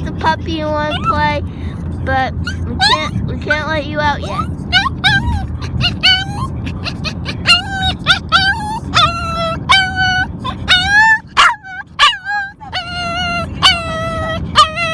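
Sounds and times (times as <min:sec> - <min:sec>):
puppy whining and yelping: 0:00.9 - 0:01.3, 0:02.4 - 0:03.2, 0:04.2 - 0:14.9.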